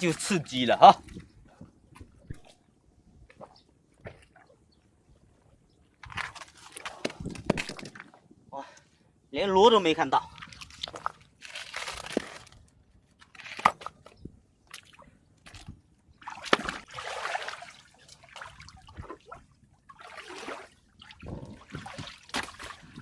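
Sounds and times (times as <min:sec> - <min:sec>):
sharp crunches and clicks: 0:06.0 - 0:08.1, 0:10.4 - 0:14.8
hands sloshing in shallow water: 0:14.7 - 0:23.0.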